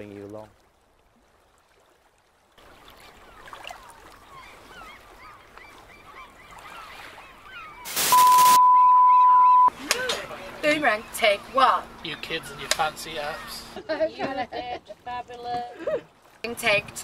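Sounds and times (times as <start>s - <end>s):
background hiss: 7.9s - 8.6s
loud burst of noise: 7.9s - 8.6s
loud high beep: 7.9s - 9.7s.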